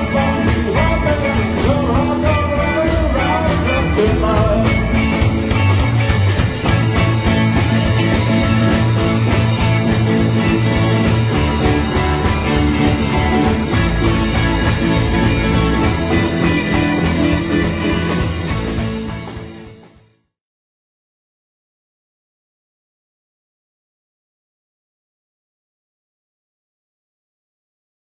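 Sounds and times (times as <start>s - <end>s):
band playing rock and roll: 0.0s - 20.1s.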